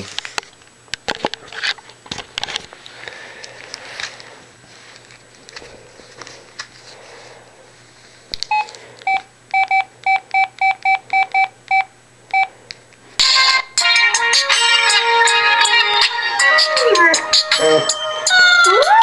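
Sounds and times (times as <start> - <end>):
phone key beeps: 8.5 - 12.5.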